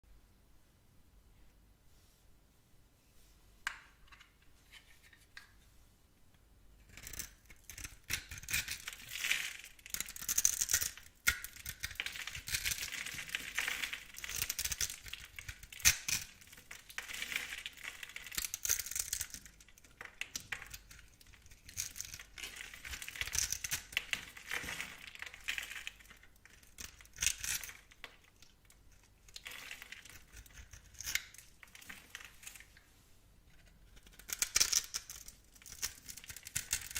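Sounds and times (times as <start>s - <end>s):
knife cutting bar soap: 6.8s - 32.8s.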